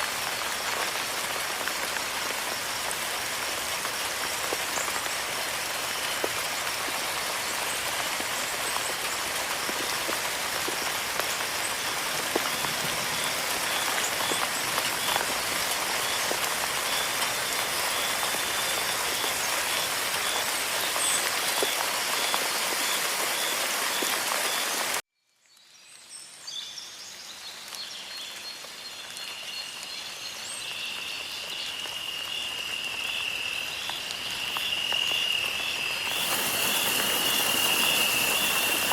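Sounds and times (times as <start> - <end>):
steady rain: 0.0 - 25.0, 26.1 - 38.9
high insect trill: 31.6 - 38.9.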